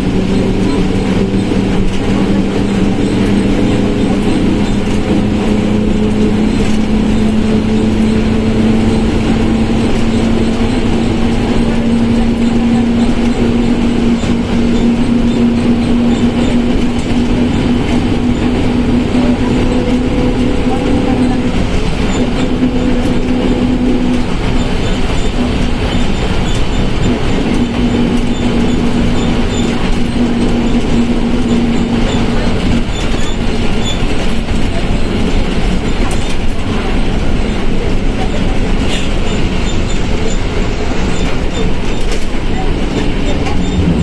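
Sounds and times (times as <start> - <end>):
bus engine droning: 0.0 - 44.0
transmission growling: 42.5 - 44.0.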